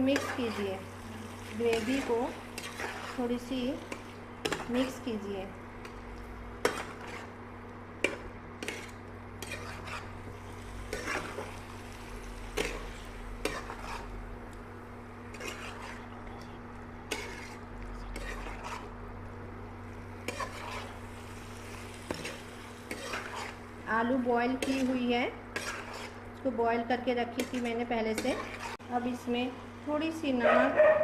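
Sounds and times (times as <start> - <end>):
faint sizzle: 0.0 - 30.8
spoon stirring curry: 8.0 - 10.2, 22.1 - 23.6, 24.6 - 26.2
spoon knocking and scraping pan: 22.0 - 23.6, 24.6 - 26.2.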